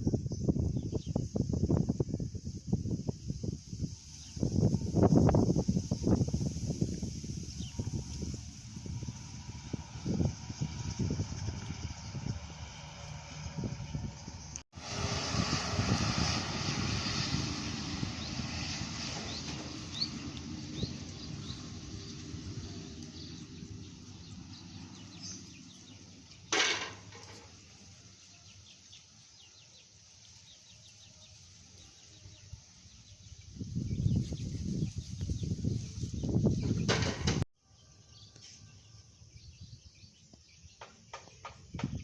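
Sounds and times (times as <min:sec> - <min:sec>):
road vehicle passing: 0:03.4 - 0:37.4
loud burst of noise: 0:03.7 - 0:22.8
birds chirping: 0:04.0 - 0:14.6, 0:17.1 - 0:42.0.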